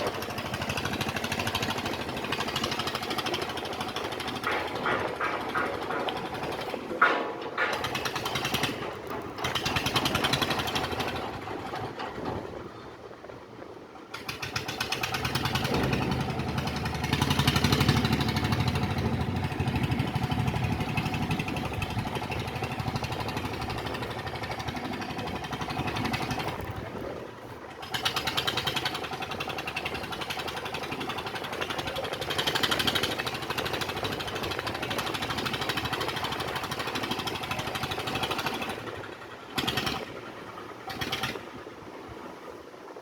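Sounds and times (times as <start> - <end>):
rapid mechanical hammering: 0.2 - 11.2.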